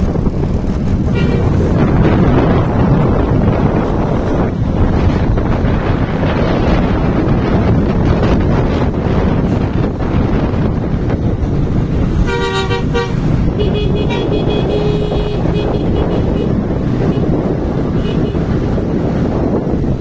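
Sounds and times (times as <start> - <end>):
traffic rumble: 0.0 - 20.0
wind noise on microphone: 0.0 - 20.0
vehicle horn: 1.0 - 1.7, 12.2 - 17.3, 18.0 - 18.4.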